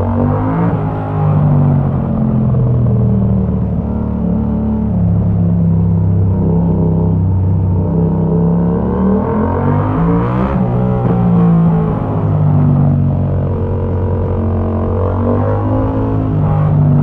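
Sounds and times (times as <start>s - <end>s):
motorcycle engine accelerating: 0.0s - 17.0s.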